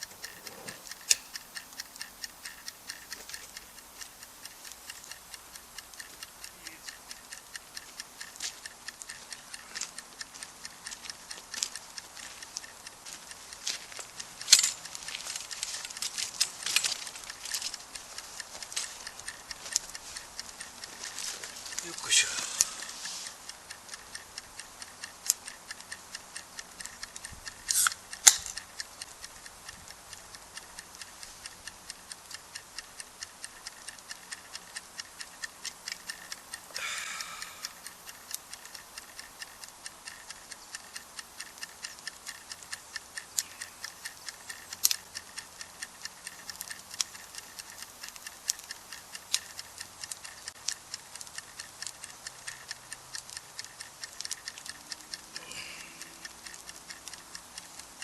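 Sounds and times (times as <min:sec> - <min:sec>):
campfire crackling and popping: 0:00.0 - 0:57.8
fire hissing: 0:20.9 - 0:23.4, 0:27.6 - 0:28.4, 0:35.9 - 0:38.7.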